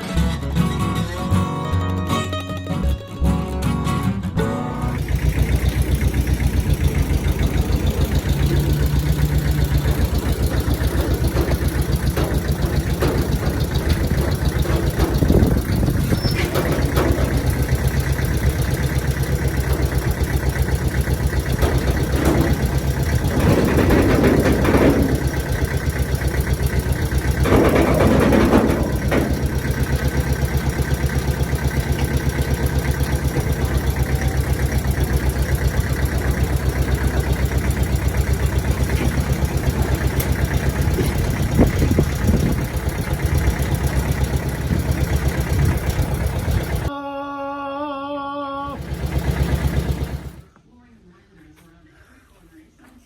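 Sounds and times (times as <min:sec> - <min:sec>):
engine idling: 0:04.6 - 0:46.9, 0:48.6 - 0:50.6.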